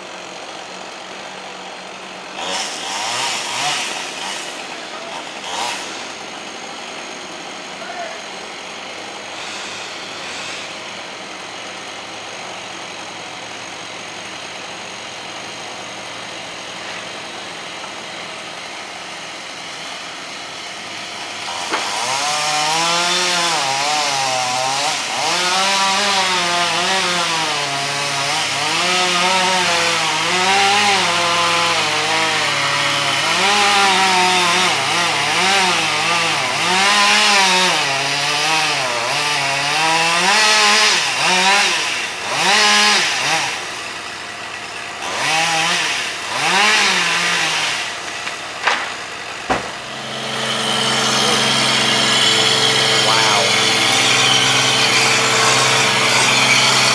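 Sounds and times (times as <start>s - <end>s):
chainsaw cutting wood: 0.0s - 56.9s
engine hum: 47.0s - 56.9s.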